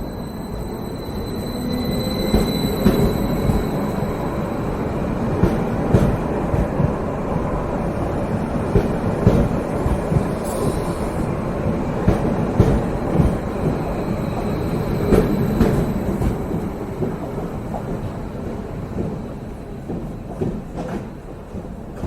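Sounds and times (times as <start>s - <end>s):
high whine of train: 0.0s - 22.0s
train rumbling: 0.0s - 22.0s.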